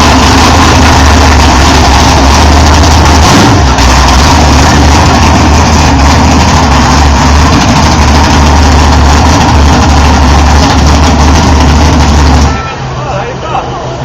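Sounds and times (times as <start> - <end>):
deep exhaust rumble: 0.0 - 14.0.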